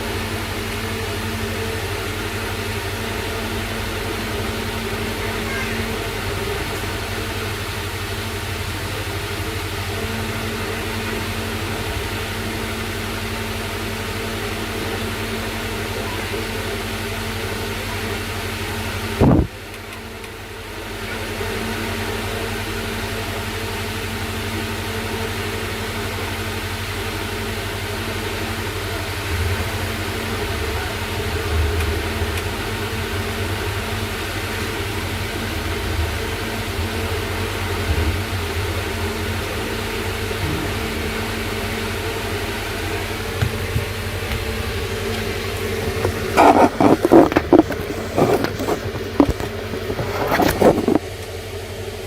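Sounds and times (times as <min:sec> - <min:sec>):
mechanical hum with hiss: 0:00.0 - 0:52.0
faint low bumps: 0:37.7 - 0:51.1.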